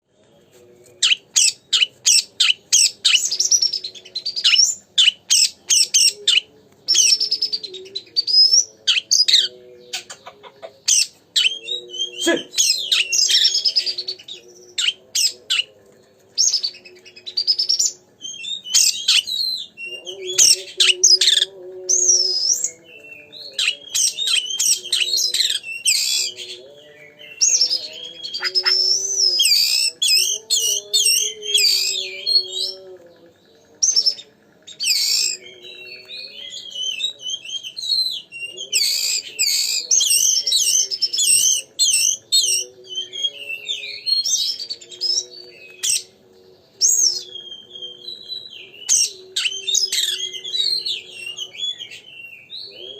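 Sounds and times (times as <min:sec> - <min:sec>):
songbird singing: 0:00.0 - 0:52.9.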